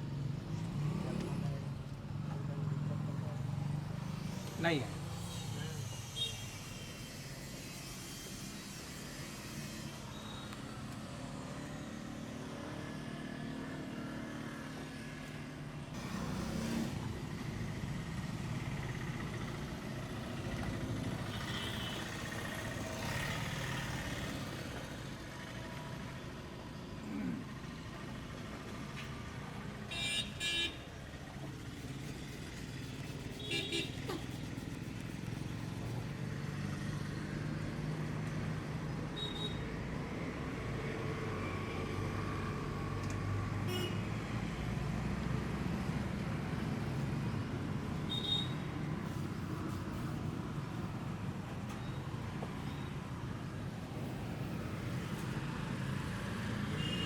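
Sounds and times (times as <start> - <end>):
traffic engines rumbling: 0.0 - 57.0
vehicle horn beeps: 21.3 - 22.1, 29.9 - 30.9, 39.2 - 39.6, 48.1 - 48.7, 56.7 - 57.0.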